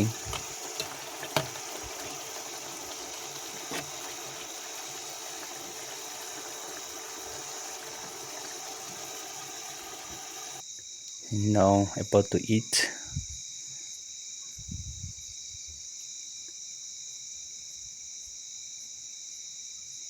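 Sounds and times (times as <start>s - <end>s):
frying sizzle: 0.0s - 10.6s.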